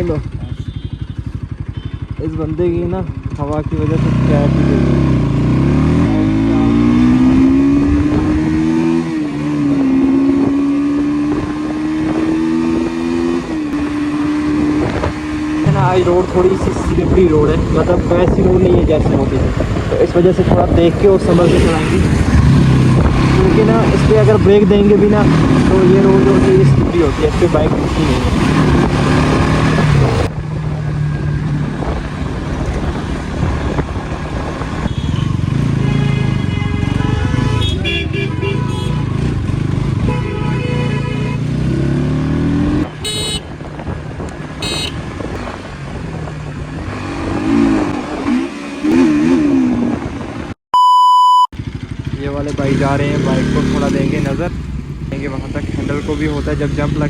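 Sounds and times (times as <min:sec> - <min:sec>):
motorcycle engine running: 0:00.0 - 0:48.0, 0:51.6 - 0:57.0
wind noise on microphone: 0:06.8 - 0:38.2, 0:42.6 - 0:50.6.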